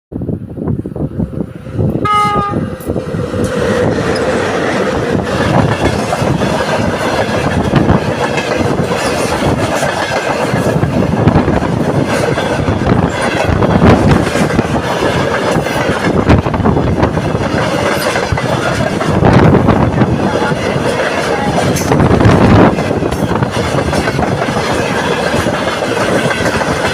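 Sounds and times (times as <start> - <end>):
freight train rumble: 0.1 - 26.9
locomotive horn blast: 2.0 - 2.7.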